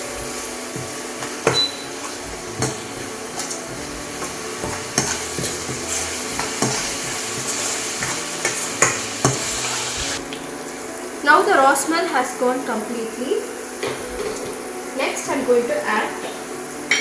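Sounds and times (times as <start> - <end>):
spatula scraping a pan: 0.0 - 10.2
food sizzling in hot oil: 0.0 - 17.0.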